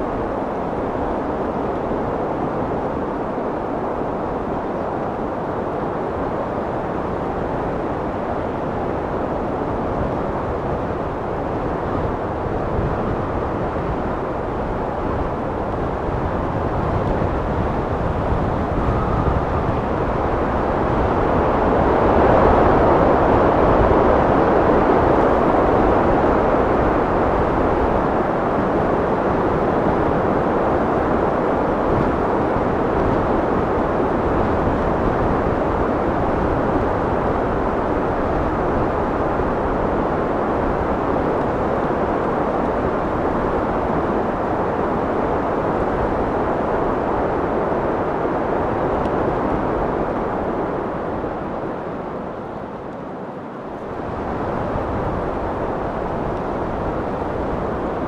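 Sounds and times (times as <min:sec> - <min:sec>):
wind blowing: 0:00.0 - 0:58.0.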